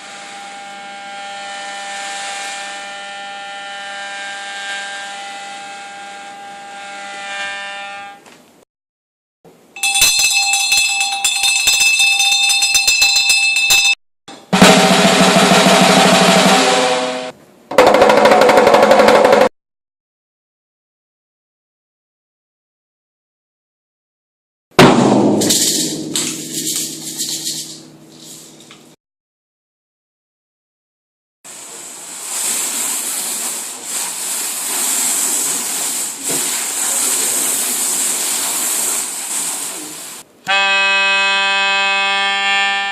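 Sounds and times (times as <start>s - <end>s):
steady ringing tone: 9.8s - 14.0s
rapid rattle of sharp strikes: 9.8s - 19.5s, 24.8s - 29.0s
dense noisy blast: 24.8s - 28.2s
surf rushing and hissing: 31.5s - 40.2s.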